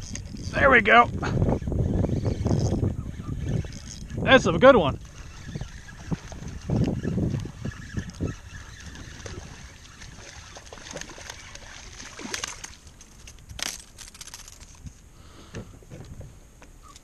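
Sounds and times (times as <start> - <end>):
water sloshing and splashing: 5.0 - 14.8
sharp splashes: 9.2 - 12.8.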